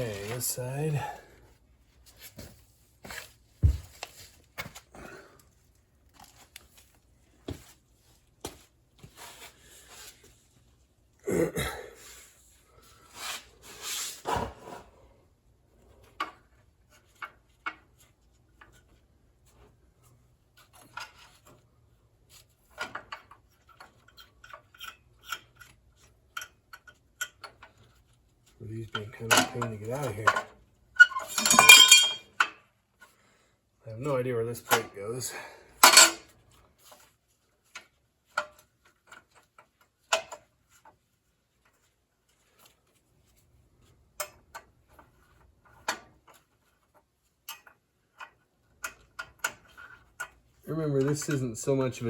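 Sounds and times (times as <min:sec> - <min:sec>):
metal parts clinking: 0:31.0 - 0:32.4, 0:35.8 - 0:36.2.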